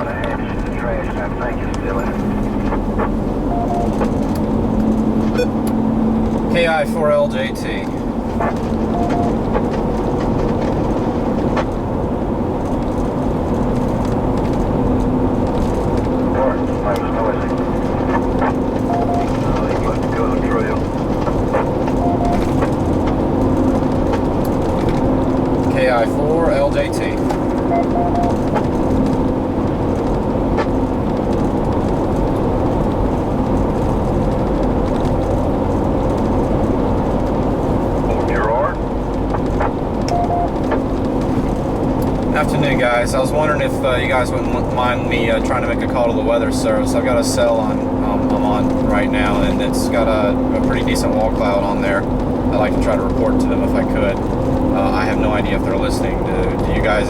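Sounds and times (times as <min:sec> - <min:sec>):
steady hum: 0:00.0 - 0:13.8, 0:14.6 - 0:31.2
vehicle engine rumbling: 0:00.0 - 0:57.0.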